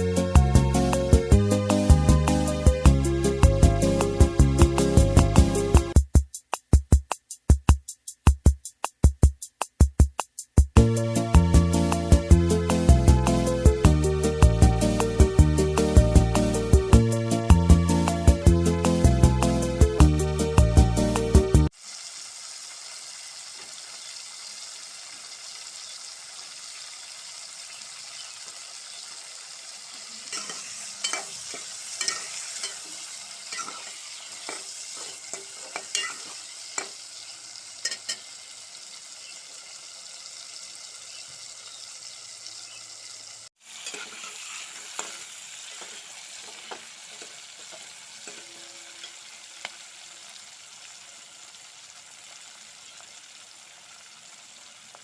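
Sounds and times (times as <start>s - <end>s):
curry sizzling in a pan: 0.0s - 6.0s, 10.8s - 55.0s
spoon scraping and clicking on pan: 30.3s - 37.0s, 37.8s - 38.3s, 43.8s - 49.8s.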